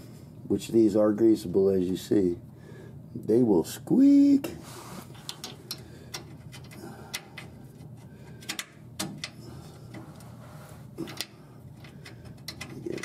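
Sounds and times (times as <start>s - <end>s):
parts clicking and knocking: 5.1s - 10.2s, 11.0s - 13.0s.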